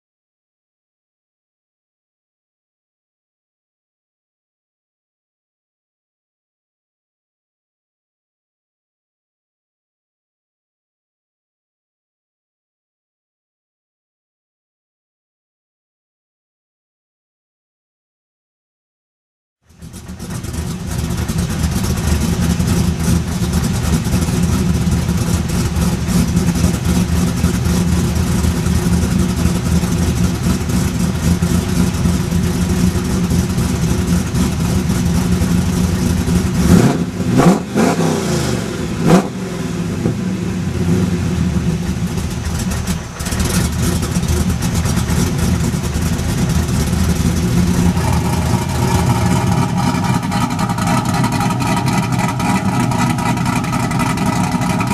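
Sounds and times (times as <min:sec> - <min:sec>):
car engine idling loudly: 0:19.6 - 0:54.9
engine revving blips: 0:20.3 - 0:54.9.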